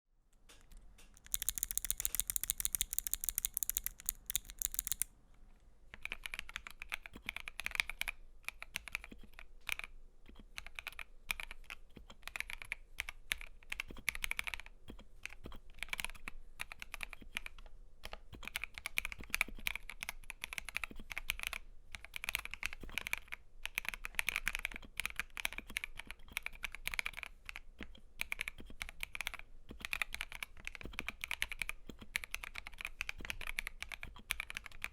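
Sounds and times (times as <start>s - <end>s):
mechanical keyboard key clacks: 1.2s - 5.1s.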